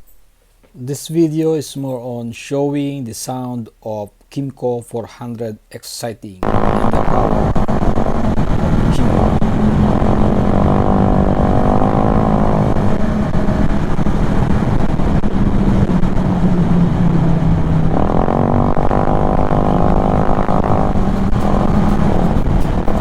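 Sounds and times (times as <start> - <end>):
scooter engine running: 6.4 - 23.0
wind noise: 6.4 - 23.0.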